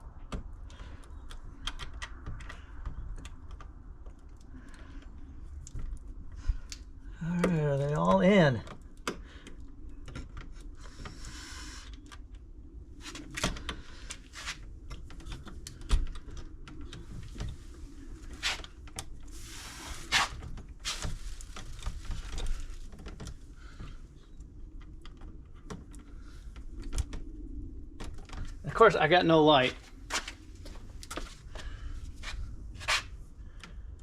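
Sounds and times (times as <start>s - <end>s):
tools clicking and tapping on wires: 8.6s - 11.1s.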